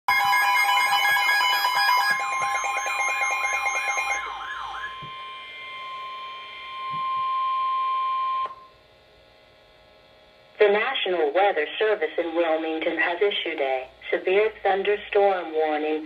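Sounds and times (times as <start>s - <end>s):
warbling siren-like alarm: 0.1s - 8.7s
long steady alarm tone: 0.1s - 9.8s.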